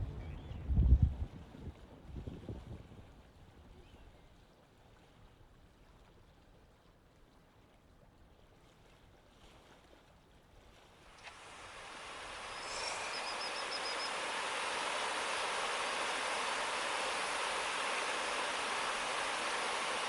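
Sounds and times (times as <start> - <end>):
background hiss: 11.2 - 20.0.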